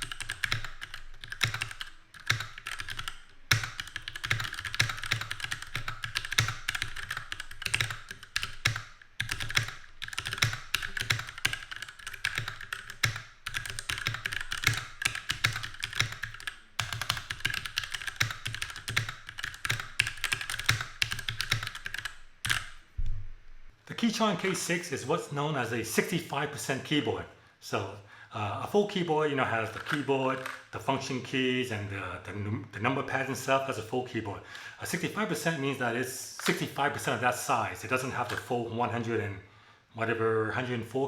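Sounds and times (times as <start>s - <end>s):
mechanical keyboard typing: 0.0s - 22.8s, 29.6s - 30.7s, 36.4s - 37.1s.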